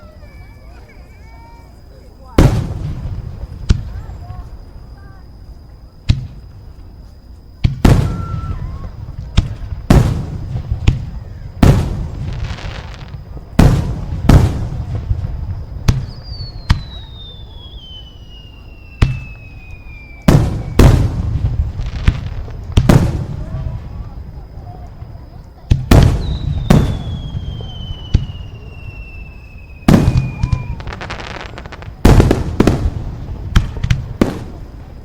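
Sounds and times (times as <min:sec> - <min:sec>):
fireworks banging: 0:02.2 - 0:05.2, 0:06.0 - 0:35.0
firework whistle sliding down: 0:16.0 - 0:20.9, 0:26.3 - 0:31.7.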